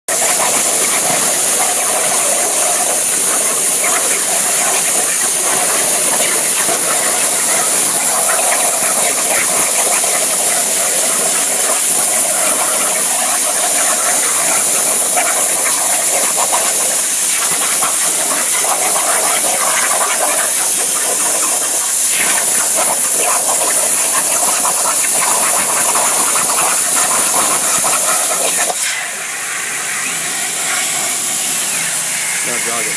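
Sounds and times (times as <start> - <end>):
plasma cutter torch hissing: 0.1 - 32.9.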